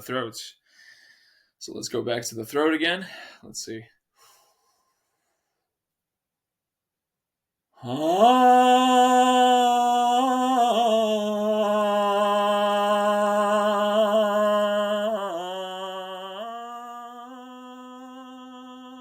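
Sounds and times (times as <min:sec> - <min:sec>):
man singing a long tone: 0:07.8 - 0:19.0.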